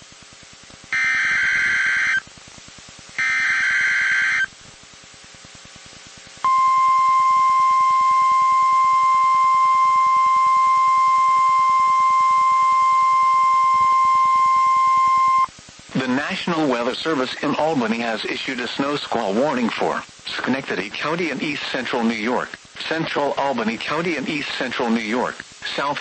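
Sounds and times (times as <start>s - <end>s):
harsh digital data bursts: 0.9s - 2.2s, 3.2s - 4.5s
steady high alarm tone: 0.9s - 2.2s, 3.2s - 4.5s, 6.5s - 15.5s.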